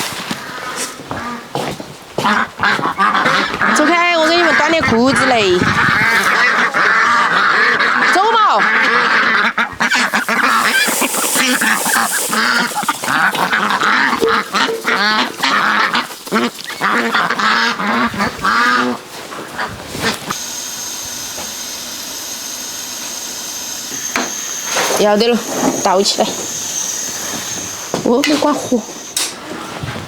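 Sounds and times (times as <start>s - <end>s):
ducks quacking: 2.2s - 20.4s
pot hissing on stove: 9.8s - 18.6s, 20.1s - 29.5s.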